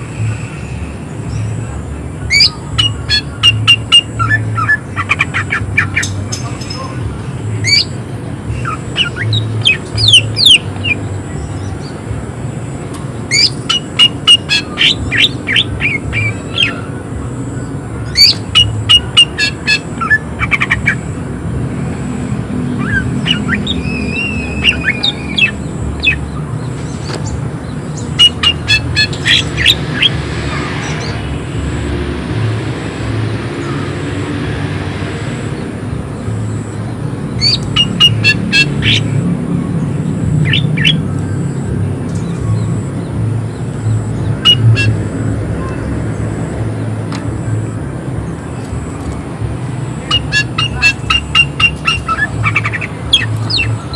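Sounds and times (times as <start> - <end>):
bird chirping rapidly: 2.3 - 12.0, 13.2 - 21.2, 22.7 - 31.4, 35.5 - 47.0, 49.8 - 53.9.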